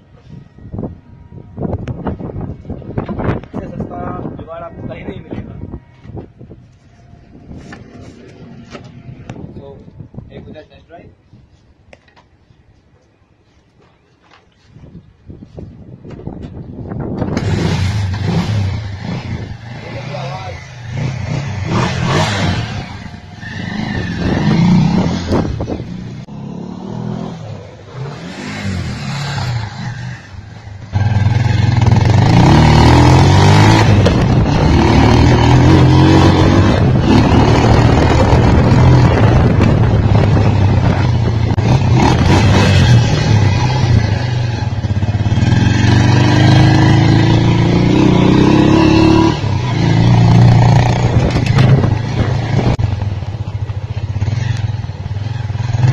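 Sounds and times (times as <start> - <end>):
motorcycle engine revving: 17.2 - 55.9.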